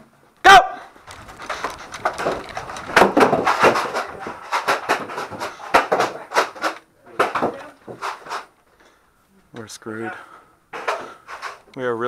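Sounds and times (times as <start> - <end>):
sharp knocks and clicks: 1.1 - 8.5.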